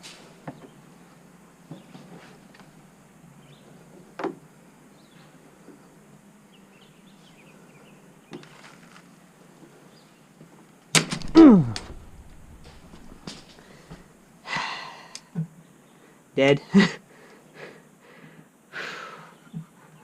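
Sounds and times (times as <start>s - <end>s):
sharp short knocks: 11.0s - 14.0s.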